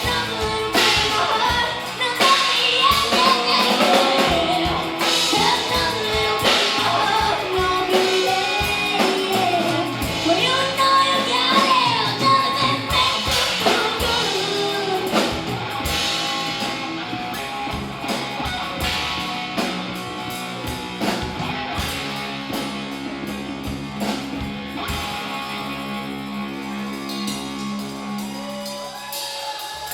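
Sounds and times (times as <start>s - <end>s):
person singing: 0.0s - 15.7s
country-rock band playing: 0.0s - 29.9s.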